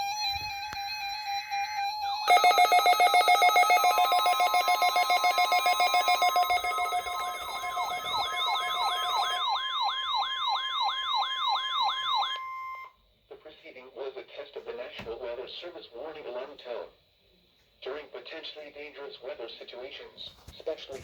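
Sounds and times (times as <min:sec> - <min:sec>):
fast pulsing alarm: 0:00.0 - 0:12.9
steady warning alarm tone: 0:00.0 - 0:12.9
rising whoop alarm: 0:02.3 - 0:12.9.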